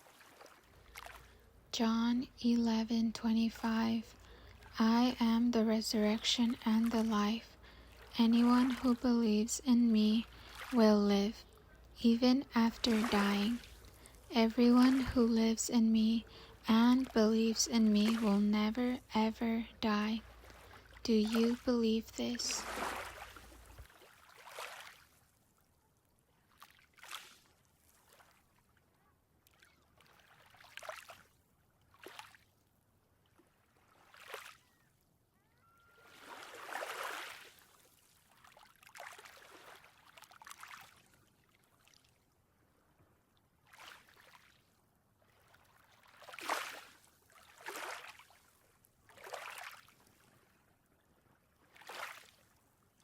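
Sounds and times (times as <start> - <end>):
ocean waves washing in: 1.9 - 23.8.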